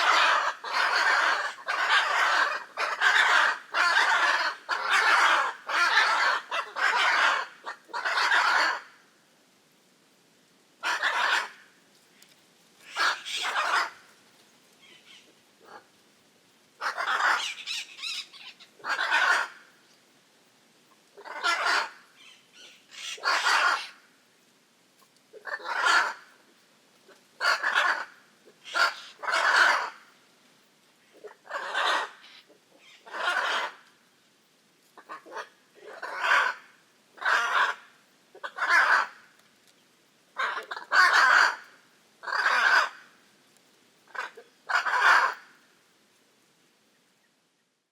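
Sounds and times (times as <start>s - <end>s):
macaws squawking: 0.0s - 8.9s, 10.8s - 11.6s, 12.8s - 14.0s, 16.8s - 19.7s, 21.2s - 24.0s, 25.3s - 26.5s, 27.1s - 30.0s, 31.1s - 33.9s, 34.9s - 39.2s, 40.4s - 43.1s, 44.1s - 45.6s.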